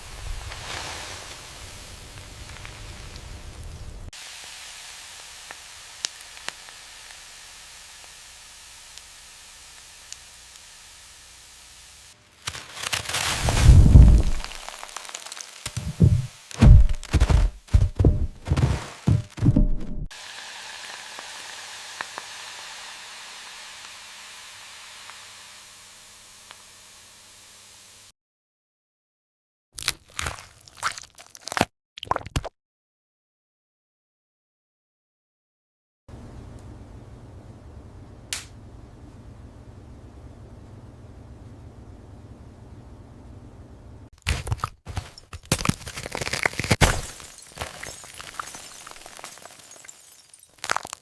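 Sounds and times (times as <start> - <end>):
steady hiss: 0.0 - 12.2, 20.1 - 26.9
knocks: 19.1 - 20.1.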